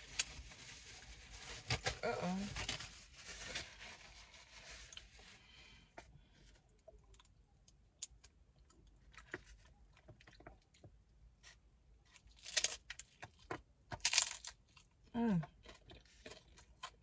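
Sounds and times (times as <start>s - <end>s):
chewing crunchy taco: 6.4s - 17.0s.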